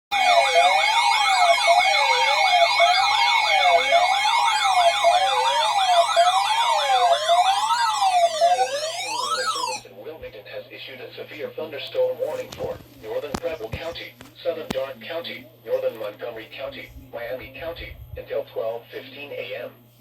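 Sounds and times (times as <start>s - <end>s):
wailing electronic alert siren: 0.1s - 9.8s
steady high-pitched tones: 0.1s - 9.9s.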